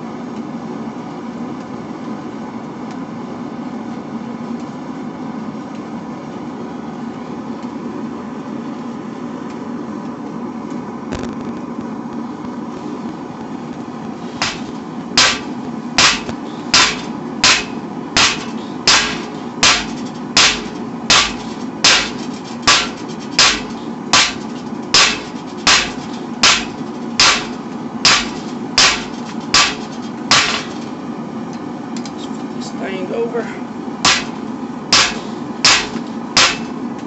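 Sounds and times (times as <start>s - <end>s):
forge running: 6.9s - 37.0s
hammer striking steel on anvil: 14.4s - 30.9s, 34.0s - 36.8s.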